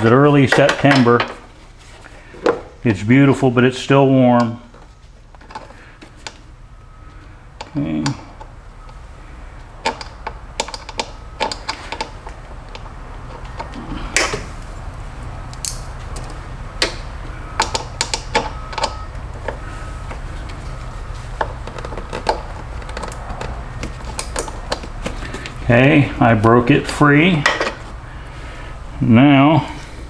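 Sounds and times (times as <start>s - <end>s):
low steady hum: 0.0s - 30.0s
hand tool clicks and taps: 15.5s - 19.6s, 21.4s - 25.6s.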